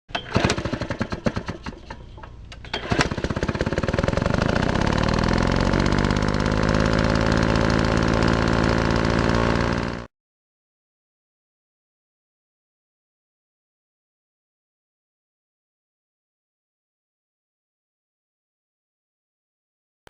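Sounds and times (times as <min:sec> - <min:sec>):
small engine running: 0:00.1 - 0:10.1.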